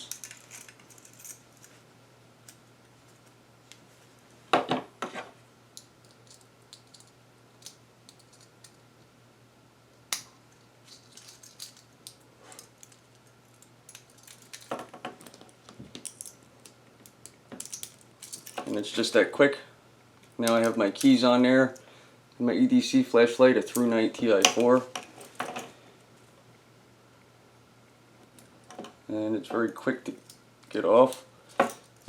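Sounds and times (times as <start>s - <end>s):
keys clicking and clinking: 0.0s - 1.7s, 6.0s - 8.8s, 10.5s - 16.8s, 17.6s - 18.8s
keys jingling: 0.0s - 1.7s, 12.7s - 14.7s, 17.6s - 18.8s.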